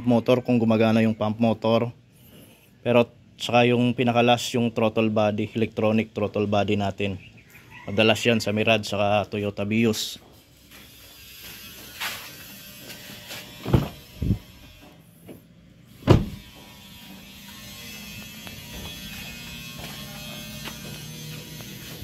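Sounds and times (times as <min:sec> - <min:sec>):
sharp knocks and clunks: 0:16.0 - 0:16.7.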